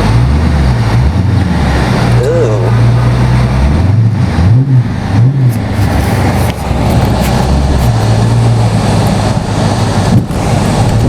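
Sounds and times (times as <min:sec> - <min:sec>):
car engine: 0:00.0 - 0:11.0
road noise inside car: 0:00.0 - 0:11.0.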